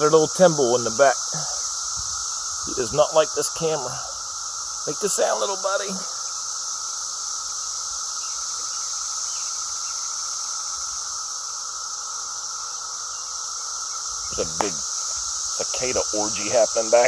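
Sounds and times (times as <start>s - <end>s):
cicadas droning: 0.0s - 17.0s.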